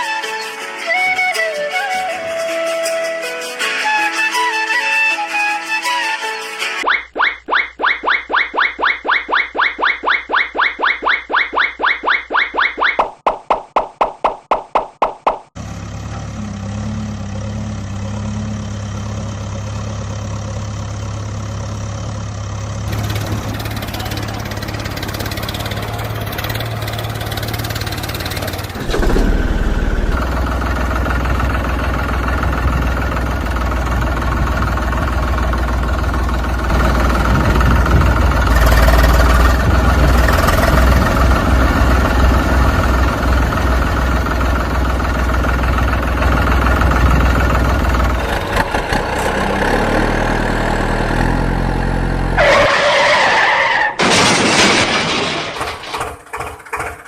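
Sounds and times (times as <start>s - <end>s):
engine running with low hum: 15.6s - 52.4s
loud burst of noise: 28.6s - 31.5s.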